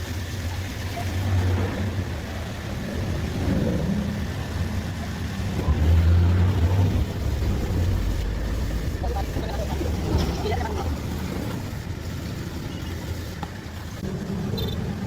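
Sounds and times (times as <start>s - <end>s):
engine low uneven rumble: 0.0s - 15.0s.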